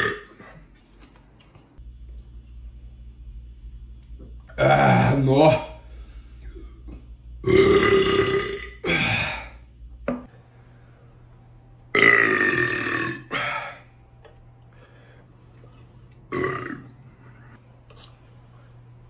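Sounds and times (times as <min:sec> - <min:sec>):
man belching: 0:00.0 - 0:00.4, 0:04.5 - 0:05.3, 0:07.4 - 0:09.5, 0:11.9 - 0:13.6, 0:16.3 - 0:17.0.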